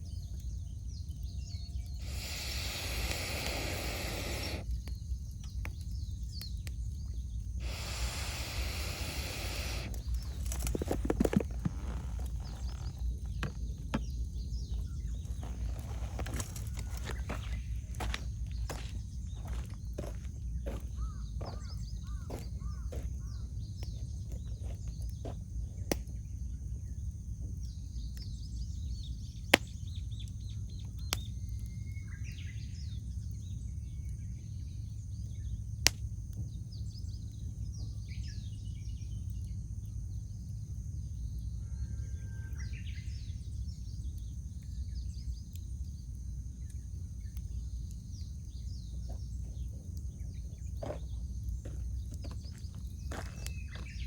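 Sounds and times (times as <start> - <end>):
birds calling: 0.0 - 26.3, 46.6 - 54.0
steady low rumble: 0.0 - 30.8, 43.1 - 54.0
wood fire crackling: 0.0 - 31.5, 43.3 - 54.0.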